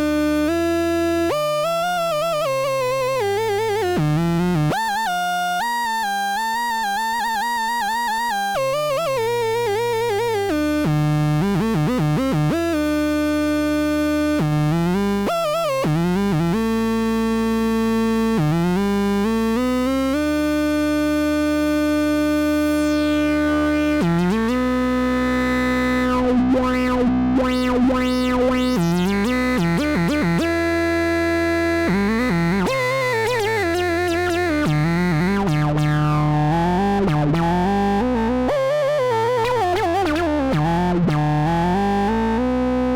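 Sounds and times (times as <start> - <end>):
synthesizer sliding held notes: 22.5 - 30.6.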